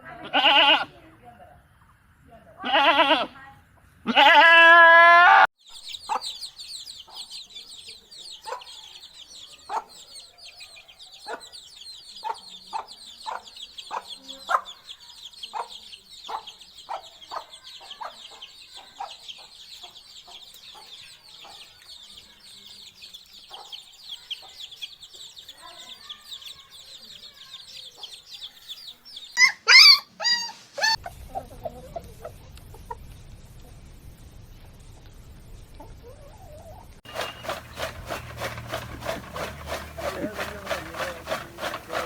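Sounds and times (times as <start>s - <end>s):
chicks peeping: 5.7s - 33.0s, 35.7s - 42.0s
chickens clucking: 5.8s - 33.1s, 35.8s - 42.0s.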